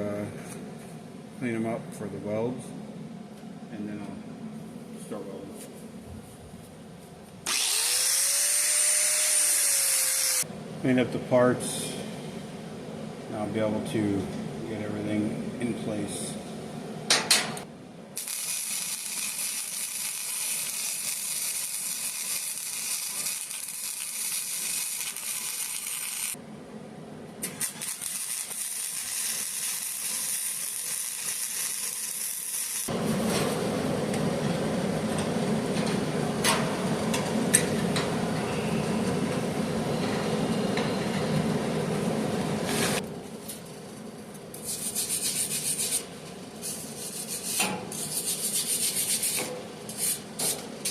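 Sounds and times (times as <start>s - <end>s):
angle grinder grinding steel: 7.5s - 10.4s, 18.2s - 26.4s, 27.5s - 32.9s.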